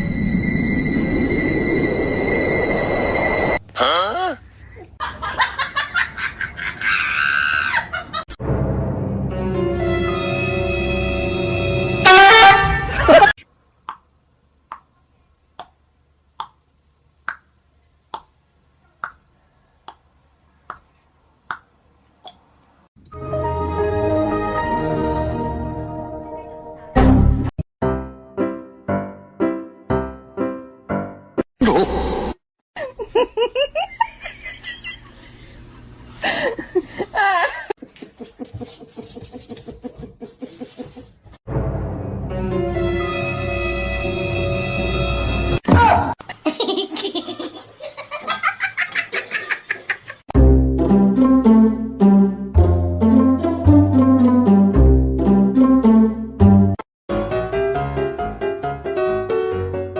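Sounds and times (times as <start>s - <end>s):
rapid pitched laughter: 5.0s - 8.3s, 32.8s - 41.2s, 46.3s - 50.2s
music: 8.4s - 13.0s, 23.0s - 31.4s, 41.5s - 45.6s, 50.4s - 59.9s.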